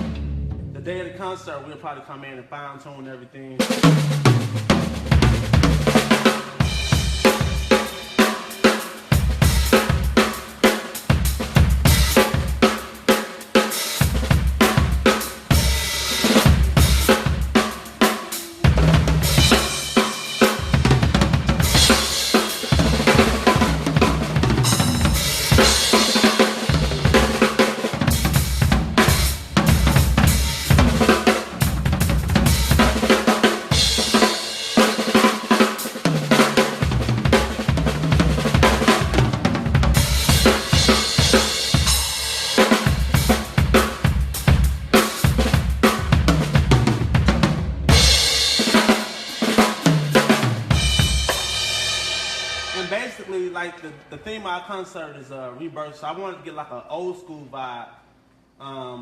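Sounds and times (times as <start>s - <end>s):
snare drum: 3.6s - 53.2s
crash cymbals ringing: 51.2s - 54.6s.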